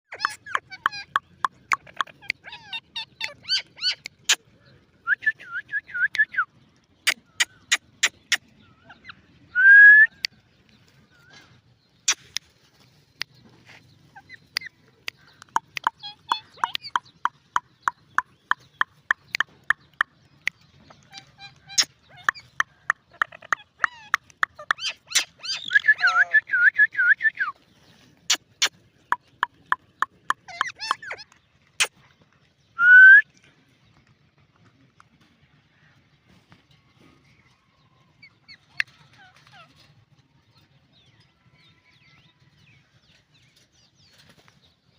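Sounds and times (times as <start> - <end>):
parakeet chirps and whistles: 0.1 - 1.1
parakeet clicks: 0.1 - 2.5, 14.5 - 25.3
parakeet squeaky chirps: 0.1 - 4.4, 15.6 - 17.2, 20.9 - 26.3, 30.4 - 31.9.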